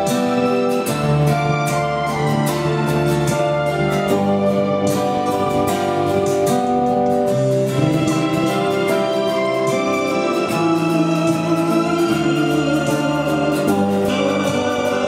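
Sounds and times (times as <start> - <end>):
acoustic guitars strumming: 0.0 - 15.0
group singing slow ballad: 10.0 - 15.0.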